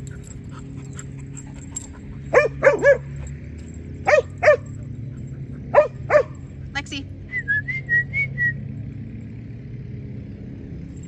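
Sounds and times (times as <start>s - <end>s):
dog barking: 2.3s - 3.2s, 4.0s - 4.8s, 5.7s - 6.4s.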